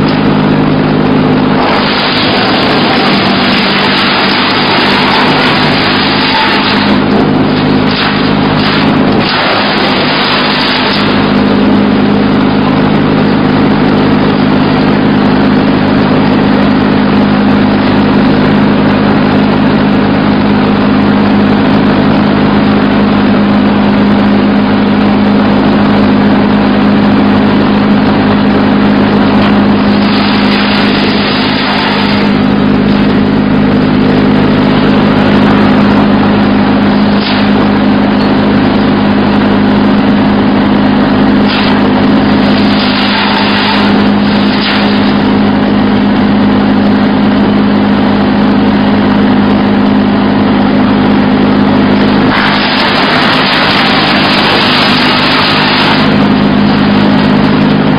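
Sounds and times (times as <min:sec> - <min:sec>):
harsh rushing noise: 0:00.0 - 0:17.2, 0:27.8 - 0:46.3, 0:50.2 - 0:57.9
wood chipper diesel engine running: 0:00.0 - 0:57.9.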